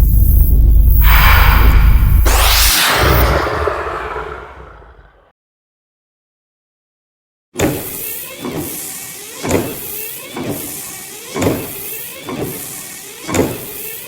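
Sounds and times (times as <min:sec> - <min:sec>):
monster wings whooshing: 0:01.0 - 0:05.2.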